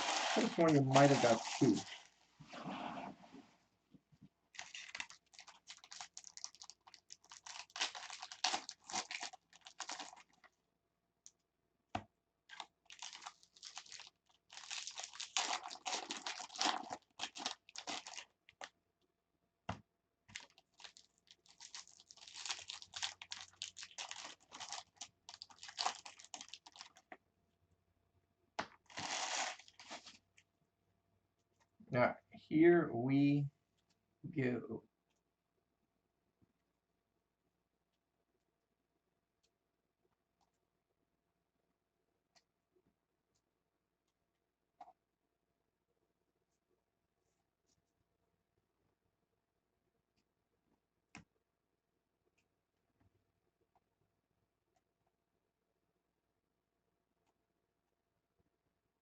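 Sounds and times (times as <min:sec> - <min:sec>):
wrapper being torn and crinkled: 0:00.0 - 0:02.1, 0:04.5 - 0:10.5, 0:12.5 - 0:18.7, 0:20.3 - 0:27.1, 0:28.8 - 0:30.2.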